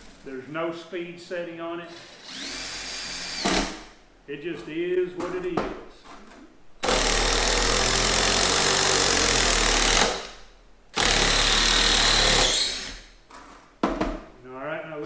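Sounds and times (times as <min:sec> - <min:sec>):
impact driver running: 0:01.9 - 0:04.0, 0:06.8 - 0:10.4, 0:11.0 - 0:13.1.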